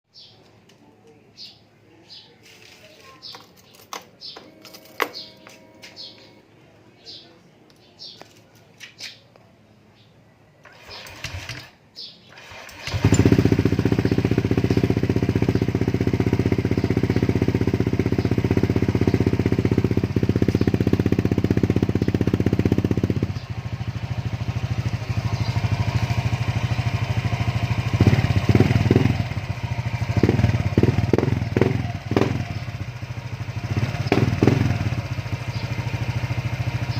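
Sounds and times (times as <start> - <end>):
motorcycle engine starting and idling: 2.2 - 6.5, 10.6 - 36.9
motorcycle throttle blips: 12.4 - 36.9.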